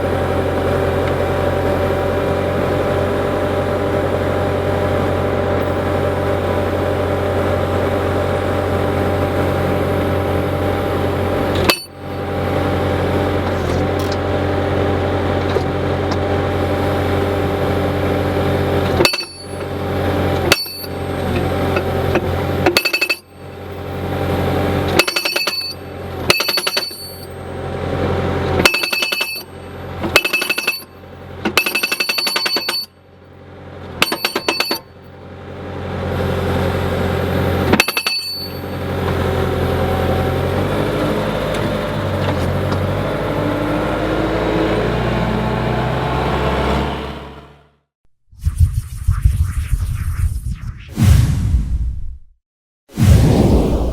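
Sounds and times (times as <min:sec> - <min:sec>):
skid steer engine running: 0:00.0 - 0:30.2, 0:30.8 - 0:31.6, 0:32.6 - 0:47.8
hydraulic post driver hammering: 0:18.9 - 0:19.7, 0:24.9 - 0:27.2, 0:28.6 - 0:32.9, 0:34.0 - 0:34.8.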